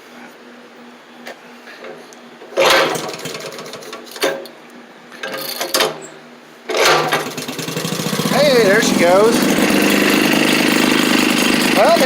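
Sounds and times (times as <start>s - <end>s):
small engine sputtering: 2.6s - 4.1s, 6.7s - 12.0s.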